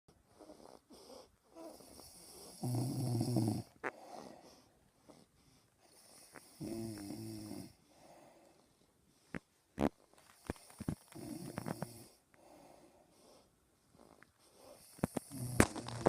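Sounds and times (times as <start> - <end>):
quiet breathing: 0.1 - 16.0
person snoring: 1.6 - 4.4, 5.9 - 7.8, 10.5 - 12.2, 14.7 - 16.0.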